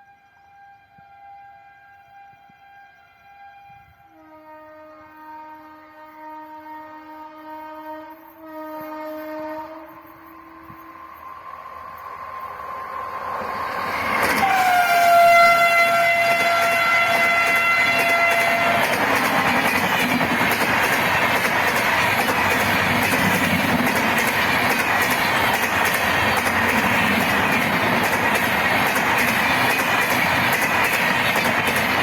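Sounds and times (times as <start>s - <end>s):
train horn: 0.0s - 12.0s, 13.4s - 25.6s
train coaches roaring past: 0.0s - 32.0s
wheels clacking over rail joints: 13.3s - 32.0s.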